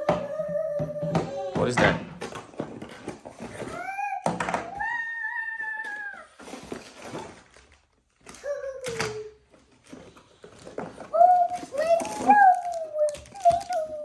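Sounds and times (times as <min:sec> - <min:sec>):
rustling: 0:05.4 - 0:14.0.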